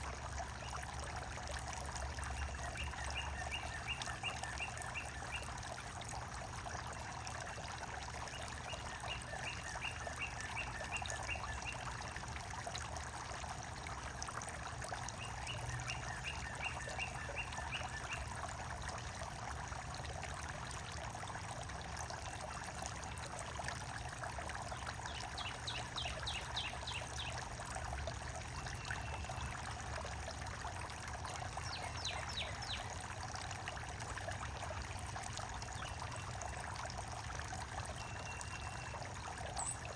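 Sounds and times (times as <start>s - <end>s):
water trickling: 0.0s - 39.9s
small birds chirping: 31.6s - 33.0s, 37.9s - 39.9s.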